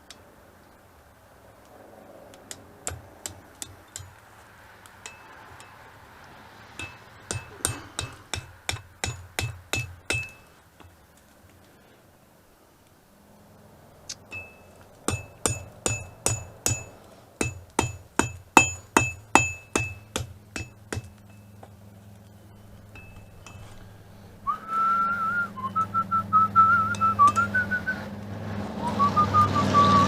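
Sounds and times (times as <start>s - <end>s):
hammer striking steel on anvil: 5.0s - 5.8s, 6.8s - 10.5s, 14.1s - 21.6s, 22.9s - 23.8s
person whistling a tune: 24.5s - 28.0s, 28.8s - 30.0s.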